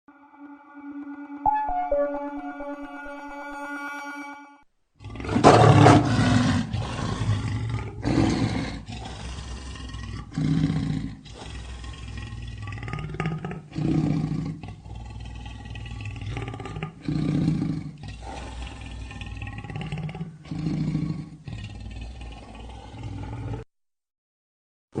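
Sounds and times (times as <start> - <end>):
lion roaring: 5.0 - 23.6.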